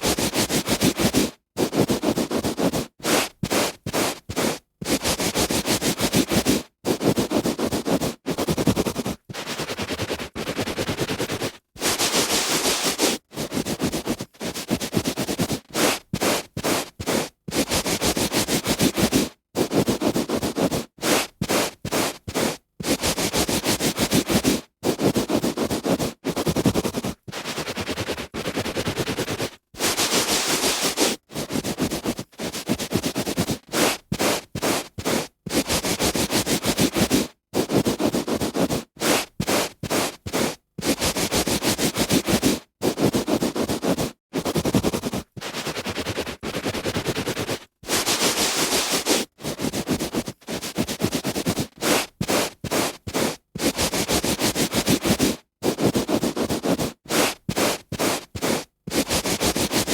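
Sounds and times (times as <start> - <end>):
hand rubbing on carpet: 0.0 - 59.9.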